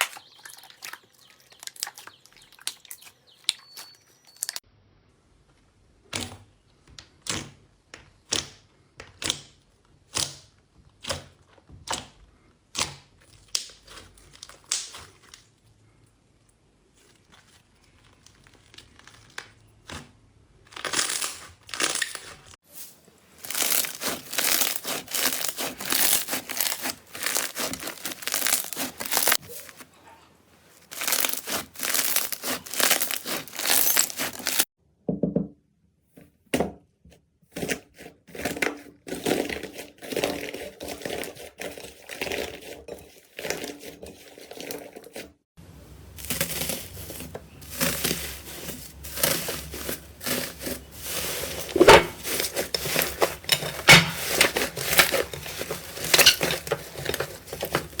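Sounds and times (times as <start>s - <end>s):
slime crackling and popping: 0.0s - 0.4s, 12.7s - 15.5s, 20.6s - 22.6s, 23.4s - 29.5s, 30.8s - 34.7s.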